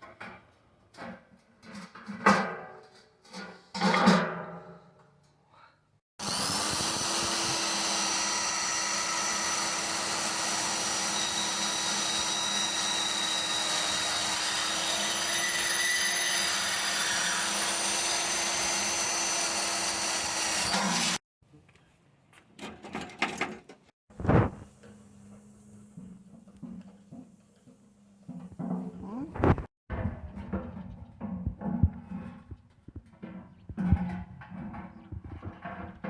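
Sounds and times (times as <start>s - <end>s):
electric power tool running: 6.2s - 21.2s.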